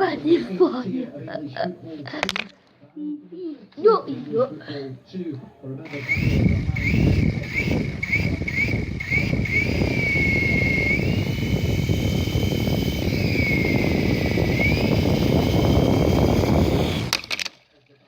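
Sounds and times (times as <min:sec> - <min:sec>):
toy helicopter motor whining: 0:05.9 - 0:17.6.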